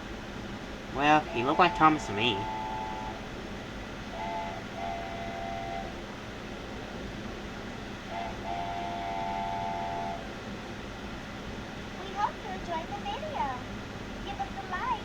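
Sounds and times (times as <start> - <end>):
steady background hiss: 0.0 - 15.0
steam train whistle: 1.0 - 6.2, 7.8 - 10.5.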